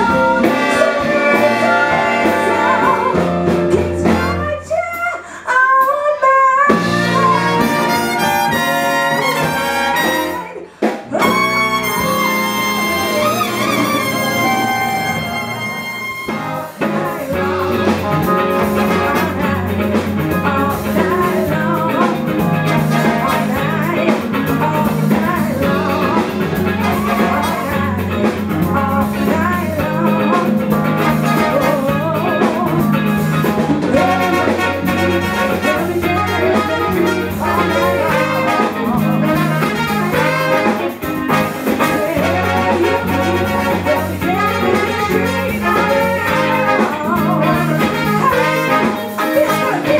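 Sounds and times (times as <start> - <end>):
brass section: 0.0 - 4.6, 6.7 - 19.6, 22.5 - 23.7, 25.7 - 27.8, 30.8 - 32.0, 33.9 - 49.9
electric bass: 0.0 - 4.6, 6.7 - 49.9
live band playing: 0.0 - 6.0, 6.6 - 49.9.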